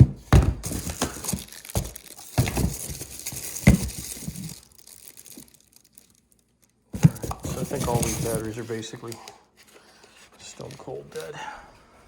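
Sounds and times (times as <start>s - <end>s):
packaging crinkling and rustling: 0.6s - 9.0s.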